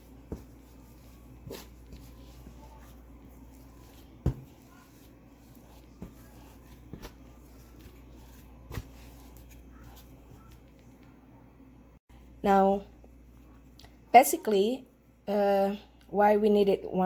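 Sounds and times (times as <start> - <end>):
low steady hum: 0.0 - 17.0
dough knocking on counter: 3.9 - 5.0.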